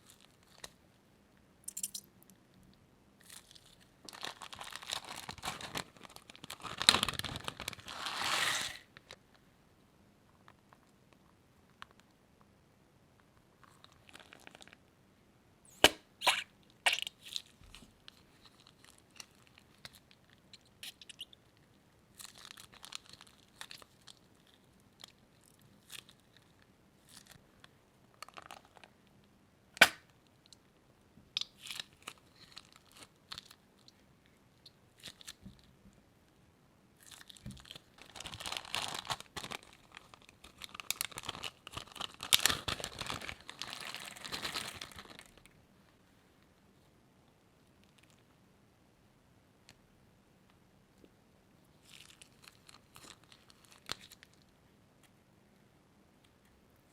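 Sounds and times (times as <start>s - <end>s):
slime crinkling: 3.2s - 9.2s, 13.6s - 14.8s, 15.7s - 21.4s, 22.1s - 27.4s, 37.0s - 45.6s, 51.8s - 54.5s
crunchy slime crunching and popping: 15.7s - 17.5s, 29.8s - 30.1s, 37.0s - 45.4s.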